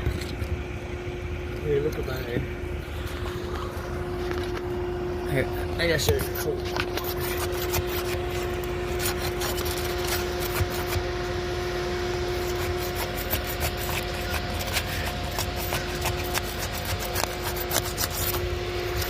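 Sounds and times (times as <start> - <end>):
steady hum: 0.0 - 19.0
shingles scraping and crackling: 6.2 - 10.9, 12.5 - 19.0.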